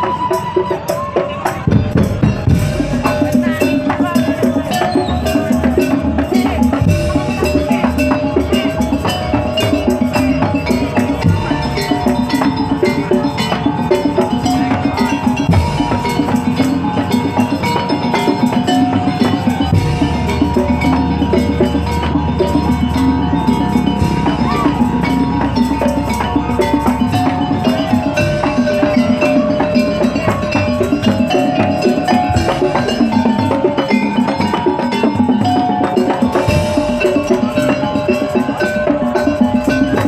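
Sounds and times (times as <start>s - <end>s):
driving drumming: 0.0s - 40.0s
held melodic notes: 0.0s - 40.0s
wooden percussion: 0.0s - 40.0s.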